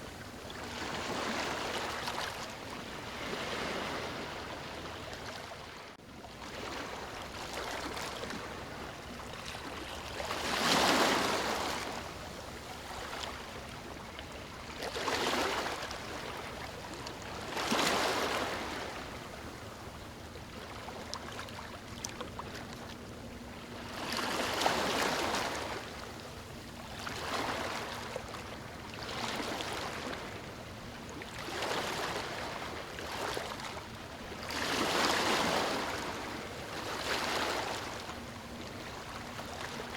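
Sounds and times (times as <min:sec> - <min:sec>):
ocean waves breaking: 0:00.1 - 0:05.8, 0:06.5 - 0:12.1, 0:23.7 - 0:39.9.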